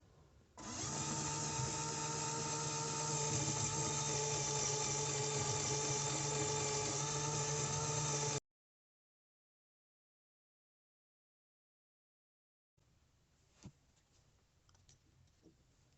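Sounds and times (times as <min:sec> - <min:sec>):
small motor whining: 0:00.6 - 0:08.4.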